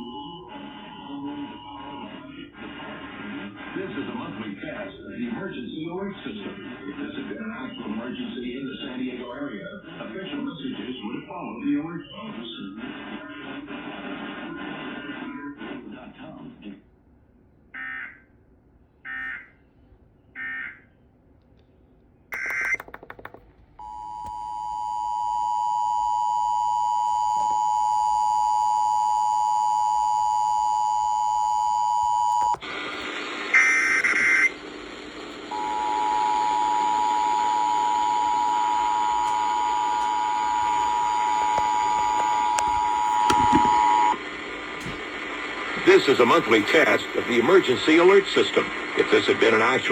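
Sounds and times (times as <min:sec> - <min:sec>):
radio hiss: 0:00.0 - 0:16.8, 0:32.4 - 0:49.9
warbling data bursts: 0:22.4 - 0:23.4
two-tone attention signal: 0:22.4 - 0:24.5.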